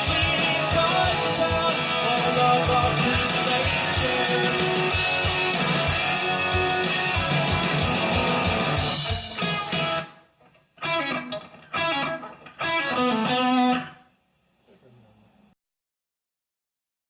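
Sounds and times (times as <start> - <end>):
rock music: 0.0 - 14.0
ringing electric guitar chords: 0.0 - 14.1.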